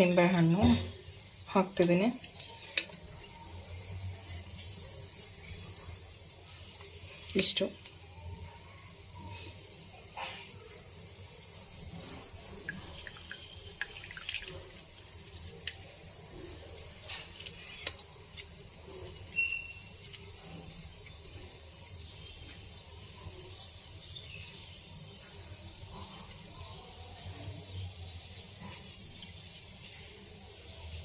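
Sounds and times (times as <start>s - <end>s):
liquid dripping: 12.4s - 22.6s.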